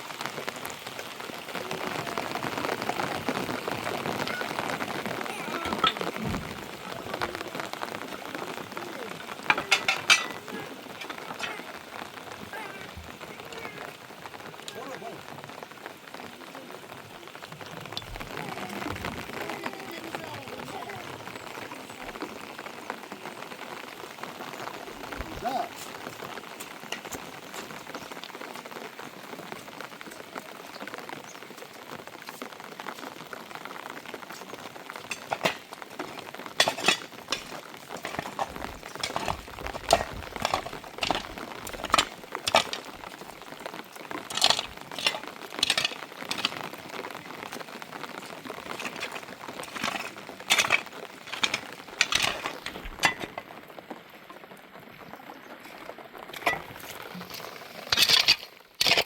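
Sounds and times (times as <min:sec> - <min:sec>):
rain hissing: 0:00.0 - 0:59.0
clinks and knocks: 0:09.4 - 0:10.5, 0:35.1 - 0:42.9, 0:44.3 - 0:46.6, 0:48.7 - 0:53.4, 0:57.9 - 0:59.0.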